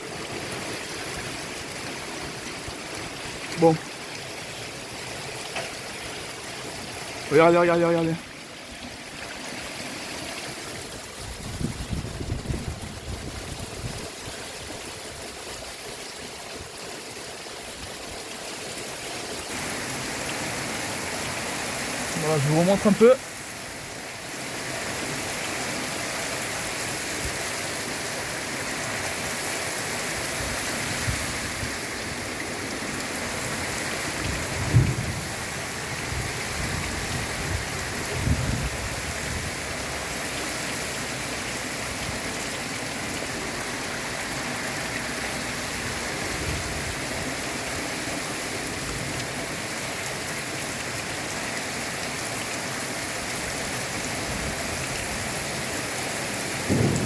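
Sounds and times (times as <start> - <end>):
torrential rain pouring: 0.0 - 57.0
low thumps: 56.7 - 57.0.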